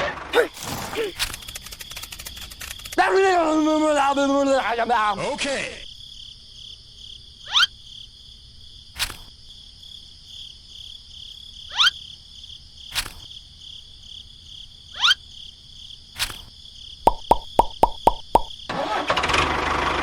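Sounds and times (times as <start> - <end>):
insects trilling: 0.4 - 18.7
sharp clicks: 1.1 - 3.0, 17.1 - 18.6.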